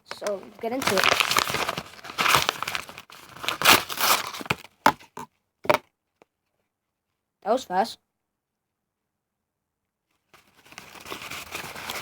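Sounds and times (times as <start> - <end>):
package tearing and crinkling: 0.1 - 4.9, 10.7 - 12.0.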